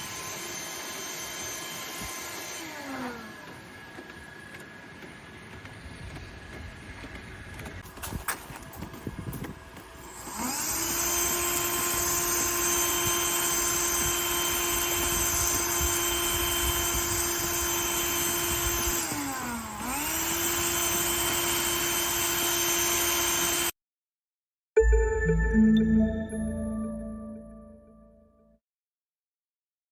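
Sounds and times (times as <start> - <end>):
vacuum cleaner motor whining: 0.0 - 23.7.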